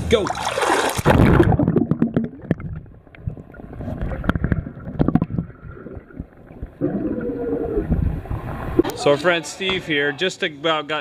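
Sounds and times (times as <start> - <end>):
underwater bubbles gurgling: 0.9 - 9.0
underwater clicks and knocks: 1.2 - 6.8.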